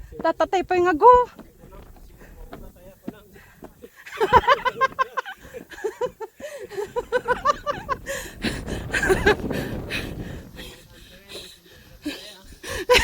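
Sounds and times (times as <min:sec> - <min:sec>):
person laughing hard: 0:04.1 - 0:10.0, 0:12.1 - 0:13.0
rough breathy rush: 0:07.9 - 0:13.0.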